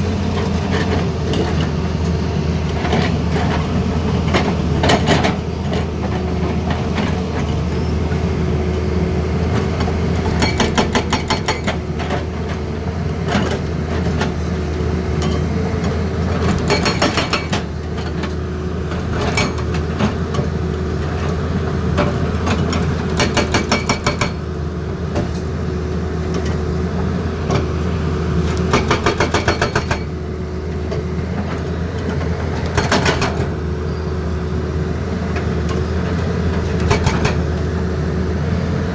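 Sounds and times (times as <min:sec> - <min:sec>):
excavator diesel engine running: 0:00.0 - 0:38.9
hydraulic breaker hammering: 0:16.6 - 0:17.7, 0:23.2 - 0:24.4, 0:28.7 - 0:30.1, 0:36.8 - 0:37.4.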